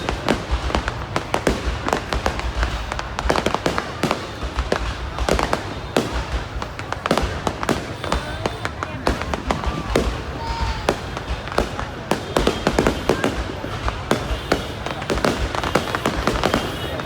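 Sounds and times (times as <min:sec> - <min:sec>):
fireworks booming bursts: 0:00.0 - 0:17.0.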